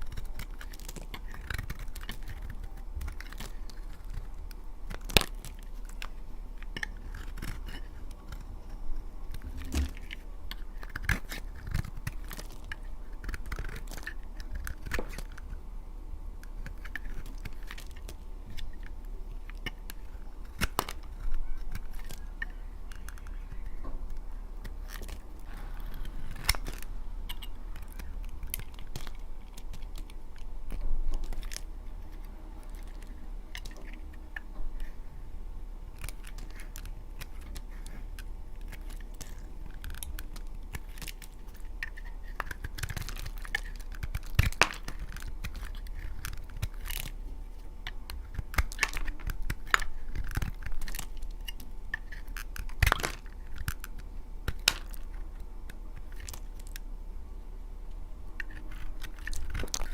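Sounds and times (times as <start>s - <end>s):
blade cutting dry soap: 0.0s - 15.6s
faint low hum: 0.0s - 59.9s.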